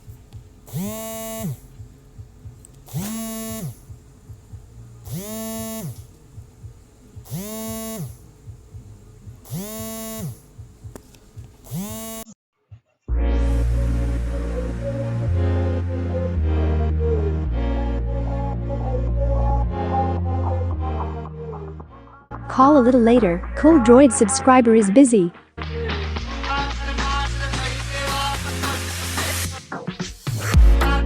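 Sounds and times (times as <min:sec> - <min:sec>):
phone vibration buzzes: 0:00.6 - 0:11.0, 0:11.6 - 0:12.4.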